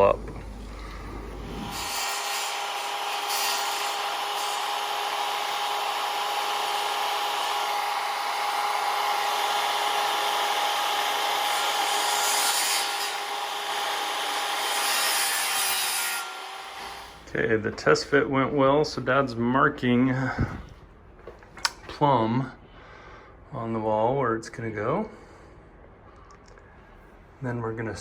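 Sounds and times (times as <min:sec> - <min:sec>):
power saw cutting wood: 0:00.0 - 0:17.3.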